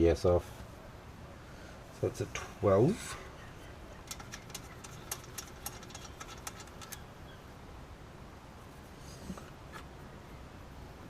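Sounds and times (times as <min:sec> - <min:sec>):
ratchet wrench clicking: 0:04.1 - 0:07.0.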